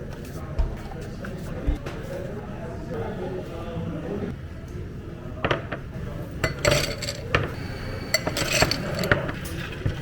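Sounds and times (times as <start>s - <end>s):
dishes and cutlery clinking: 6.4s - 10.0s.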